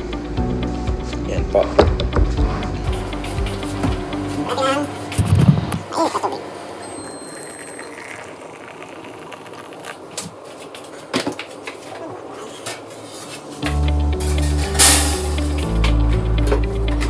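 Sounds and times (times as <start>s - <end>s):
background music: 0.0s - 6.8s, 13.4s - 17.0s.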